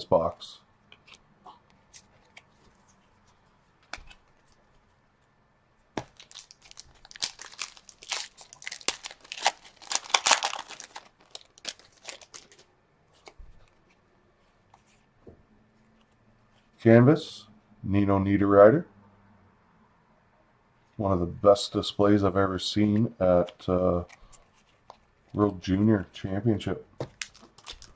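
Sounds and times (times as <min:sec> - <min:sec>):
foil wrapper crinkling: 0:06.0 - 0:12.7, 0:27.1 - 0:27.9.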